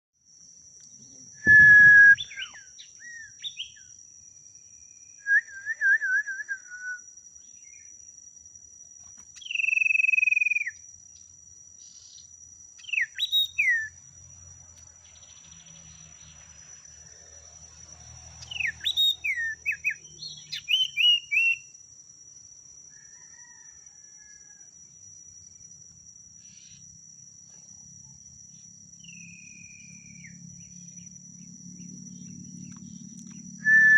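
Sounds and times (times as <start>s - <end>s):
songbird whistling and chirping: 1.4s - 3.8s, 5.2s - 7.1s, 9.4s - 10.8s, 12.8s - 14.0s, 18.4s - 21.7s, 33.6s - 33.9s
short thump: 1.5s - 2.2s
high thin whine: 1.5s - 2.3s.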